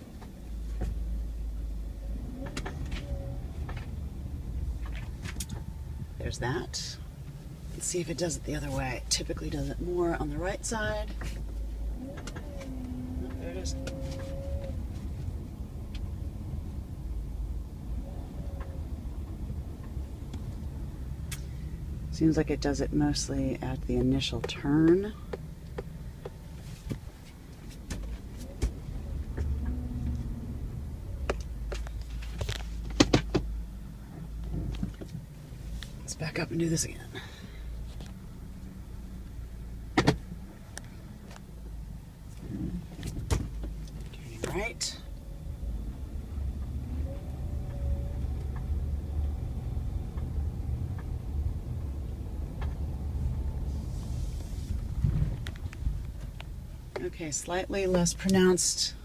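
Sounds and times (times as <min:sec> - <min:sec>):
low car rumble from inside: 0:00.0 - 0:59.0
car knocking when turning: 0:23.9 - 0:30.4, 0:39.9 - 0:40.3.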